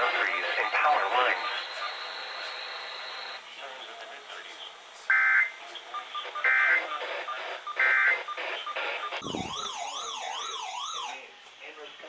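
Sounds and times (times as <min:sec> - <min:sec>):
warbling siren alarm: 0:06.4 - 0:11.2.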